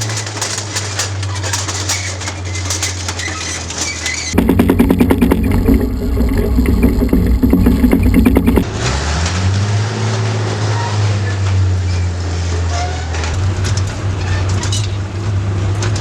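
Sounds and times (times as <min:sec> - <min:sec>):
fast rattle of clicks: 0:00.0 - 0:08.6
tank engine running: 0:04.3 - 0:08.9.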